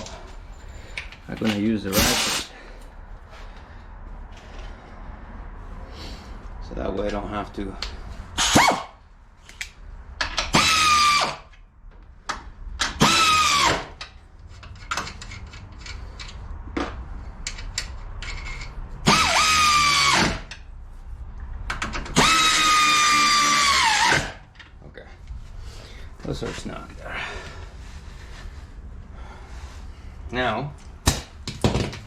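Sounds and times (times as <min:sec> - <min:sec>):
electric ratchet motor whine: 0:19.1 - 0:20.5, 0:22.2 - 0:24.4.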